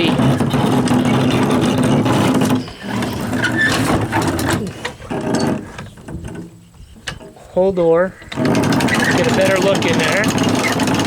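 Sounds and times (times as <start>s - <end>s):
hand crank ratchet clicking: 8.2s - 11.0s.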